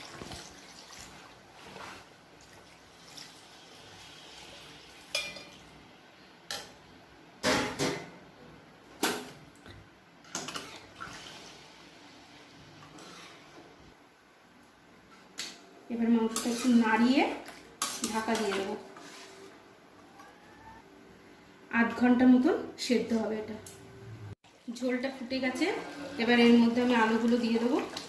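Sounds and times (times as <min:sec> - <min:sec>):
water pouring into a pot: 0:00.0 - 0:01.7
utensils clanking against a pot: 0:05.1 - 0:05.6, 0:16.2 - 0:18.8.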